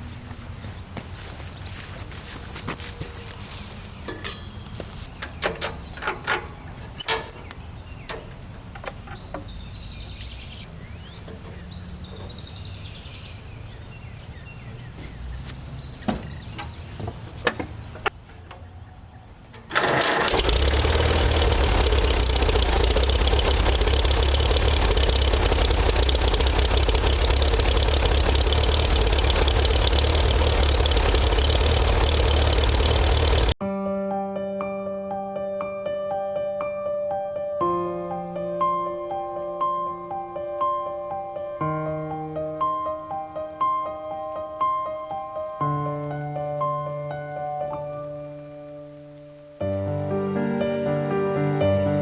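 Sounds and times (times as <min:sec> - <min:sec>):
metal clanks and knocks: 0:04.0 - 0:09.6
tractor engine starting and running: 0:04.1 - 0:13.8, 0:15.0 - 0:33.6.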